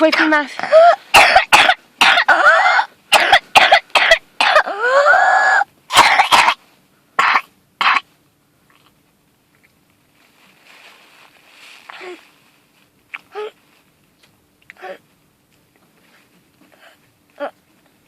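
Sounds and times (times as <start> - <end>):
child coughing: 0.1 - 4.8, 5.9 - 6.6, 7.2 - 8.0.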